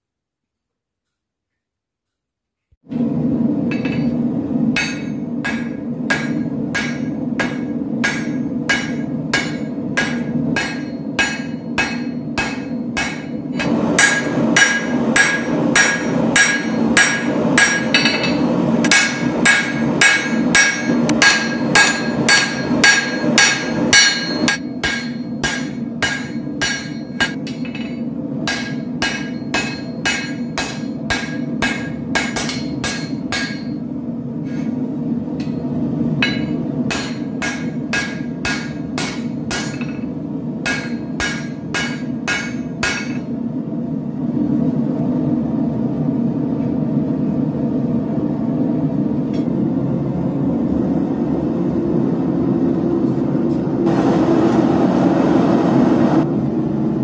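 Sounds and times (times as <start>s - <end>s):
hammer on anvil ringing: 3.7s - 4.2s, 4.8s - 33.8s, 35.4s - 43.4s.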